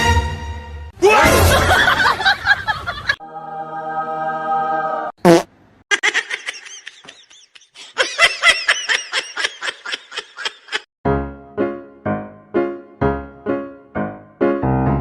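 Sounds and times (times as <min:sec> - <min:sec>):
high-pitched giggling: 0:05.9 - 0:10.9
piano music: 0:11.0 - 0:15.0.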